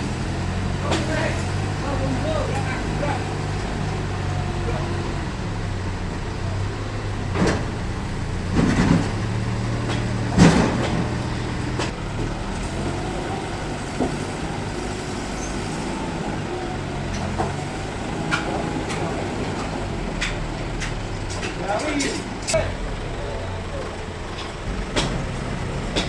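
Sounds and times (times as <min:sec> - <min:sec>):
sawmill machinery humming: 0:00.0 - 0:26.0
knocks and clatters: 0:07.0 - 0:12.7, 0:17.1 - 0:22.6.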